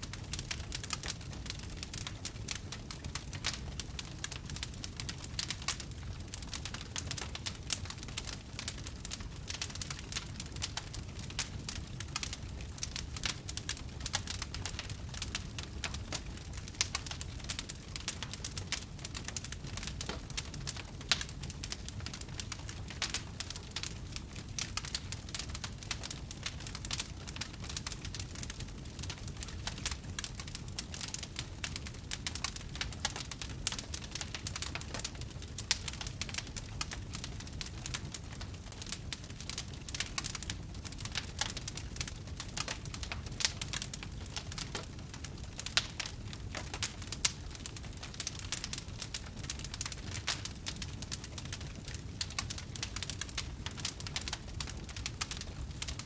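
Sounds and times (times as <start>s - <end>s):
campfire crackling: 0.0s - 56.0s
low rumble of flames: 0.0s - 56.0s.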